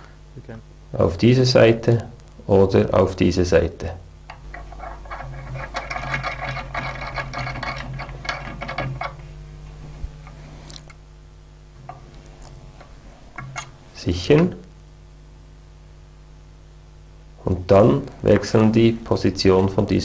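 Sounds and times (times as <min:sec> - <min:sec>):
low hum: 0:00.0 - 0:20.0
small metal parts clicking and rattling: 0:04.5 - 0:09.2.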